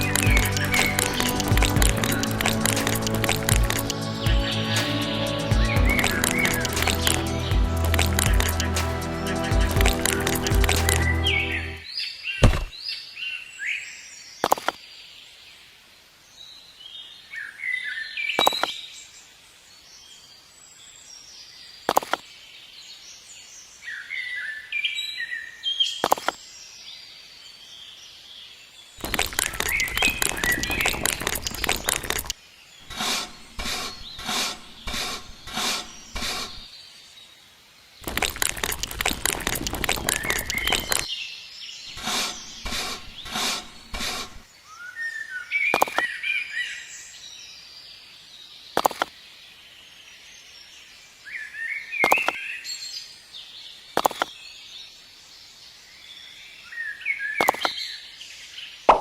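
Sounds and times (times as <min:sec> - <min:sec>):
loud rasping strokes: 0:00.0 - 0:11.8, 0:29.0 - 0:36.7, 0:38.0 - 0:41.1, 0:41.9 - 0:44.5
small birds chirping: 0:00.0 - 0:13.1, 0:25.4 - 0:58.8.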